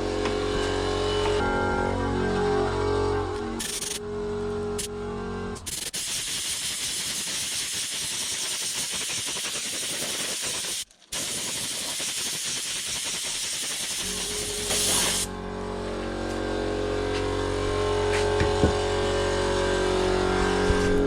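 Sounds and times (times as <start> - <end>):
spray gun hissing: 5.7 - 15.3.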